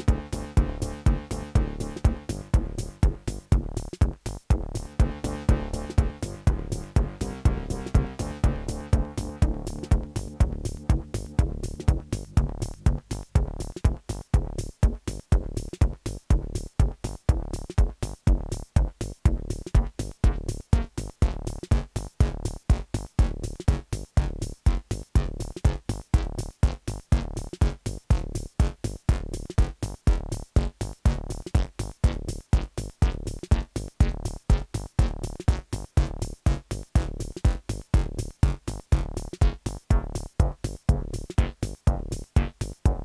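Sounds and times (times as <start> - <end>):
repeating electronic synth pattern: 0.0 - 3.3, 4.8 - 11.4
kick drum beat: 0.0 - 43.0.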